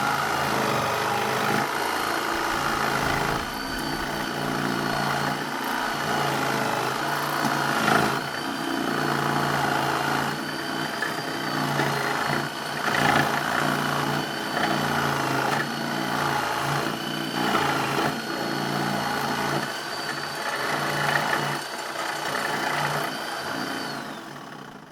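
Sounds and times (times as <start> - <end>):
thin high whine: 1.6 - 7.1.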